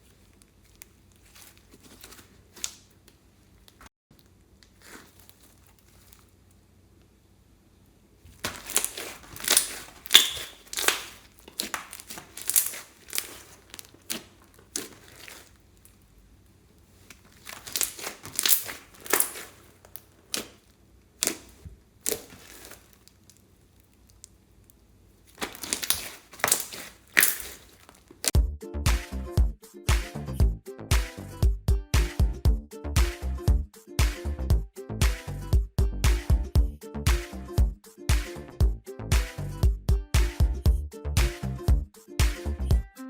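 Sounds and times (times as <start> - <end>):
slime squeezed by hand: 4.7 - 6.3, 8.3 - 16.0, 16.8 - 24.3, 25.3 - 28.4.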